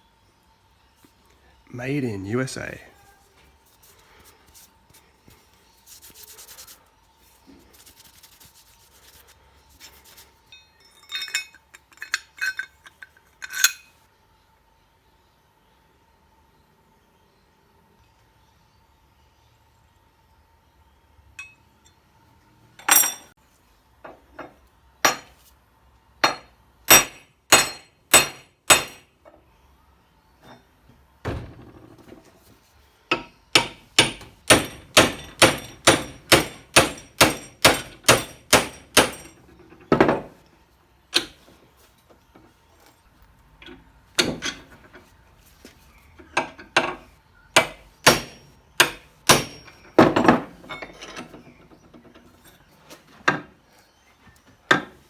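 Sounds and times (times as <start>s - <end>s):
hammer striking metal: 26.2s - 29.1s, 33.1s - 39.4s, 47.6s - 49.8s.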